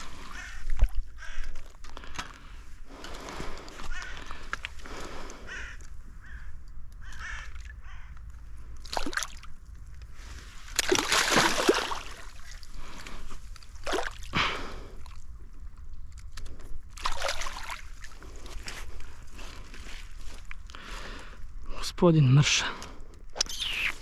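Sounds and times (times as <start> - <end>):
water splashing and sloshing: 0.0 - 6.0, 7.2 - 20.8
crow cawing: 0.2 - 1.8, 3.8 - 4.5, 5.4 - 8.2.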